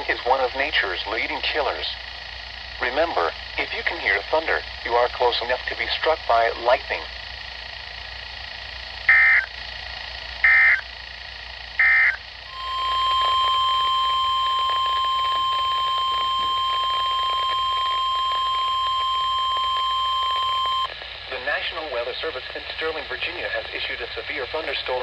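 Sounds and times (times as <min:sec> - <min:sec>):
light radio hiss: 0:00.0 - 0:08.1, 0:11.9 - 0:25.0
steady warning alarm tone: 0:09.1 - 0:09.5, 0:10.4 - 0:10.8, 0:11.8 - 0:20.9
warbling digital data tones: 0:11.8 - 0:20.9.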